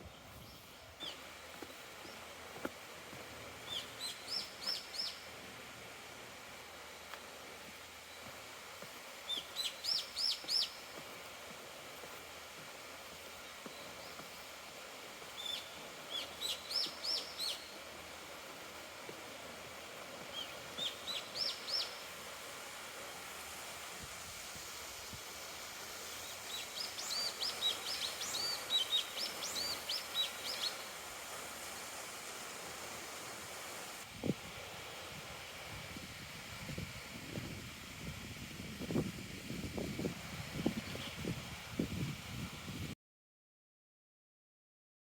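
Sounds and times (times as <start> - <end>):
songbird singing: 0.0 - 2.3, 3.6 - 5.4, 9.2 - 11.1, 13.2 - 18.2, 20.2 - 22.3, 26.0 - 31.0.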